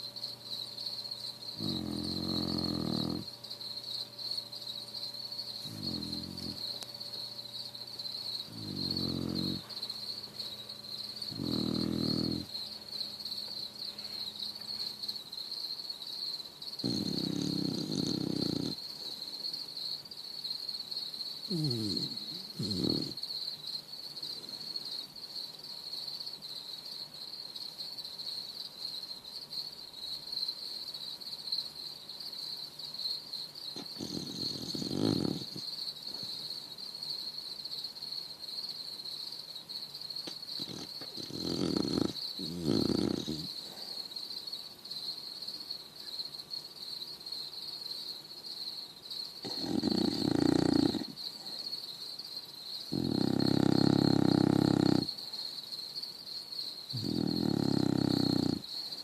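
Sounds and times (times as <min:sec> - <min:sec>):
high-pitched chirring hum: 0:00.0 - 0:15.4
dog snoring: 0:01.4 - 0:03.4, 0:05.4 - 0:07.0, 0:07.8 - 0:13.3, 0:16.8 - 0:18.8, 0:21.5 - 0:23.2, 0:33.8 - 0:35.7, 0:40.2 - 0:44.0, 0:49.4 - 0:51.2, 0:52.9 - 0:55.2, 0:56.9 - 0:58.7
dog snorting: 0:01.5 - 0:03.3, 0:05.6 - 0:07.0, 0:08.4 - 0:10.0, 0:11.2 - 0:12.7, 0:16.8 - 0:18.8, 0:21.5 - 0:23.2, 0:33.8 - 0:35.6, 0:40.6 - 0:43.8, 0:49.4 - 0:51.2, 0:52.9 - 0:55.1, 0:56.9 - 0:58.7.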